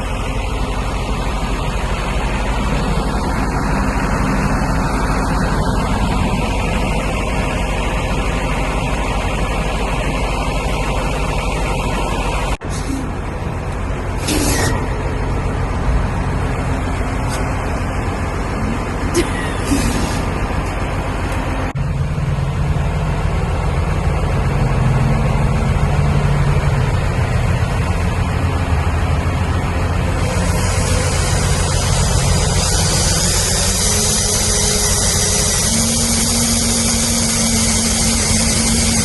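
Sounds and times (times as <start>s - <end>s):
vehicle engine rumbling: 0.0s - 39.0s
steady tone: 13.2s - 39.0s
hiss: 30.2s - 39.0s.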